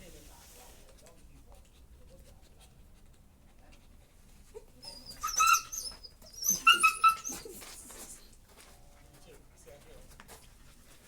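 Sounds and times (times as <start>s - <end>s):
puppy whining: 4.6s - 8.0s.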